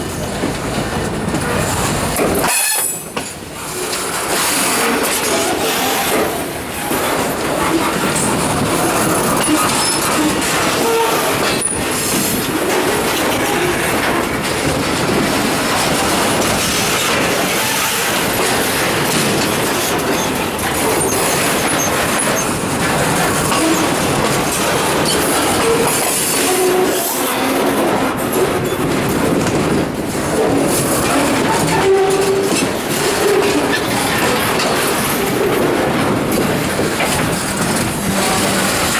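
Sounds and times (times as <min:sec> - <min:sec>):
train wheels clacking over joints: 0:00.0 - 0:38.9
wheel squeals: 0:02.3 - 0:03.2.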